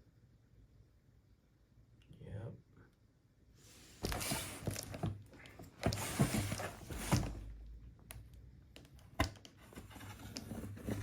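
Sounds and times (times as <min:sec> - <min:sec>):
cardboard box rustling and scraping: 0:03.9 - 0:07.6, 0:09.6 - 0:11.0.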